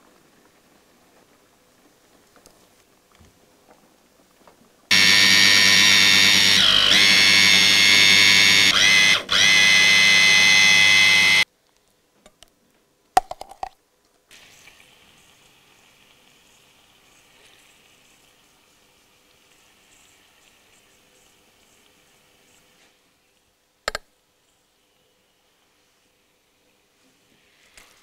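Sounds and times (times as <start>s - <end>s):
faint steady hiss: 0.0s - 5.0s, 11.4s - 28.0s
electric blender running: 4.9s - 11.4s.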